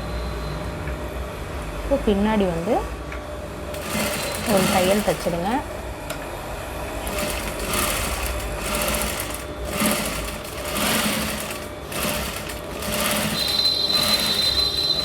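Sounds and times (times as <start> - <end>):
sewing machine stitching: 3.7 - 5.6, 7.0 - 15.0.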